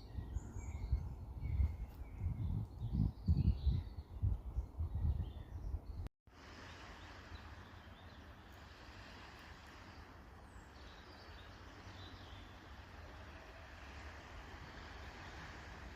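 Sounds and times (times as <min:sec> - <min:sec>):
steady wash of noise: 0:06.3 - 0:15.9.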